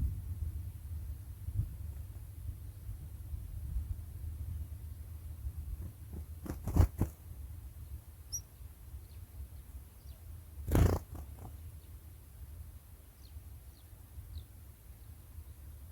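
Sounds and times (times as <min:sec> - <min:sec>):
faint bird chirp: 0:07.8 - 0:12.0, 0:13.1 - 0:15.6.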